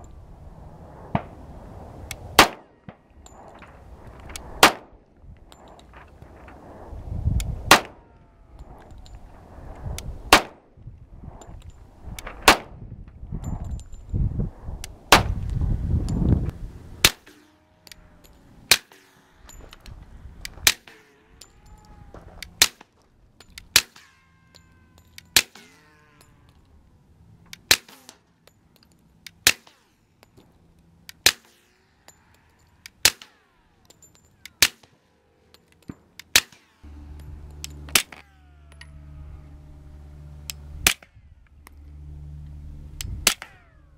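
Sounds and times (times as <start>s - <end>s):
pistol shots: 2.4s - 3.6s, 4.6s - 4.9s, 7.7s - 8.0s
thin ringing: 3.0s - 4.6s, 13.2s - 14.5s, 17.2s - 22.6s, 23.2s - 27.1s, 36.7s - 43.9s.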